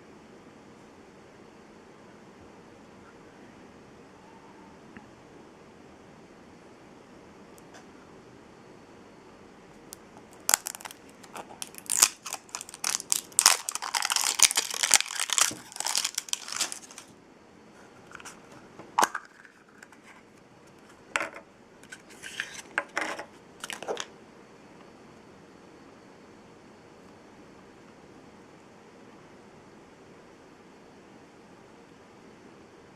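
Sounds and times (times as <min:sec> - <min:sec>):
toy packaging tearing and crinkling: 0:10.3 - 0:17.1.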